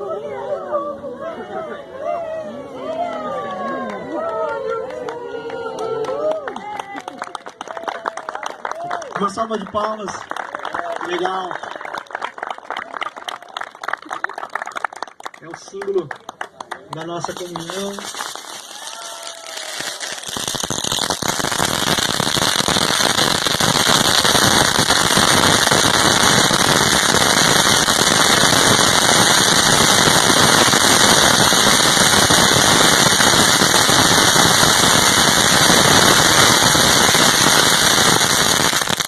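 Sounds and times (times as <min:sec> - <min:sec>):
firecrackers crackling: 0:16.9 - 0:39.0.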